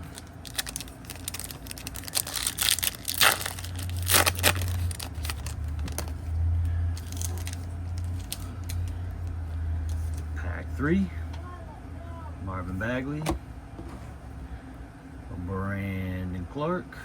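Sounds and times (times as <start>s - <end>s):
plastic wrapper crinkling and tearing: 0.0s - 6.2s, 7.0s - 9.0s
low hum: 0.0s - 16.5s.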